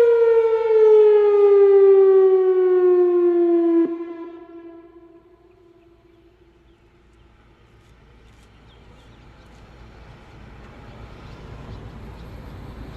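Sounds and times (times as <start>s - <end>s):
tornado siren wail: 0.0s - 6.5s.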